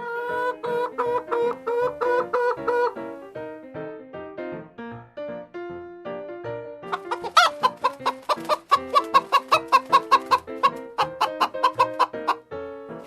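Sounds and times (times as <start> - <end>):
chicken squawk: 0.0 - 3.0, 6.9 - 12.4
chickens clucking: 0.0 - 3.2, 6.9 - 12.5
piano music: 0.0 - 13.0.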